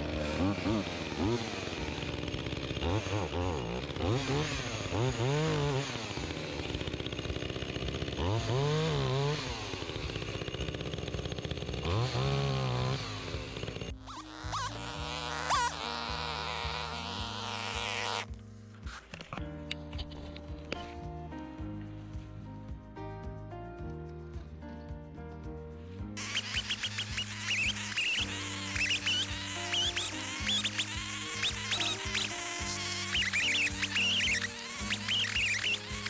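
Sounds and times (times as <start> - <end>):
chainsaw revving cutting logs: 0.0 - 18.3, 26.2 - 36.0.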